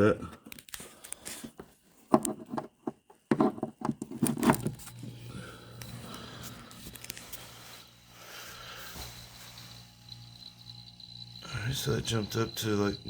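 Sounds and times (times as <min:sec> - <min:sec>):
fridge compressor humming: 0:04.0 - 0:13.0.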